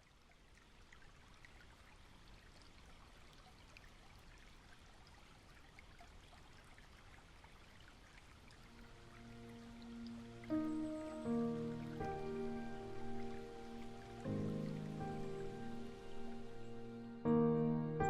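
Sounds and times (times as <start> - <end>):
water drips: 0.0 - 17.3
trickling stream: 0.0 - 18.0
soft music: 8.6 - 18.0.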